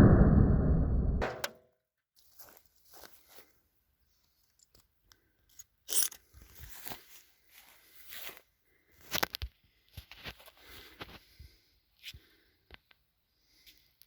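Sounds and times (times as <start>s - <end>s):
sharp knocks: 1.2s - 1.6s.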